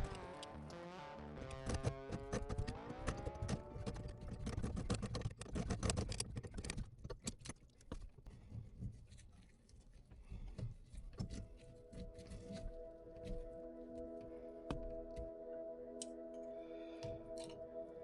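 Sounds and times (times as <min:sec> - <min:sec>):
clatter of objects being handled: 0:01.6 - 0:13.4.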